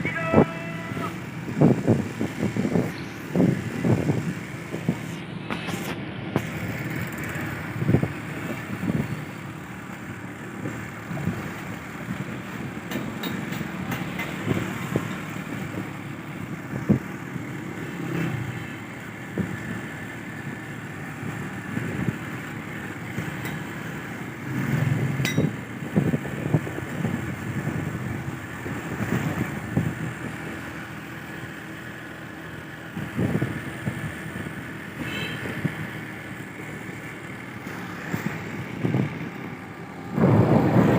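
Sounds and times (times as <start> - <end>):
wind on microphone: 0.0 - 9.3, 24.6 - 30.6, 32.9 - 36.0, 38.0 - 40.9
car engine and road rumble: 0.0 - 40.9
city road traffic: 0.0 - 40.9.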